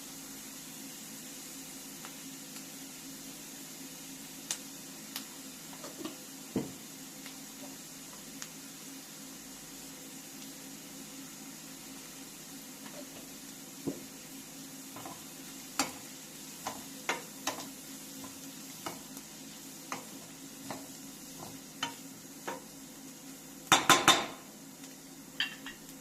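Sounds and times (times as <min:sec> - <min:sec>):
steady hiss and hum: 0:00.0 - 0:26.0
utensil stirring in a pot: 0:12.8 - 0:24.4.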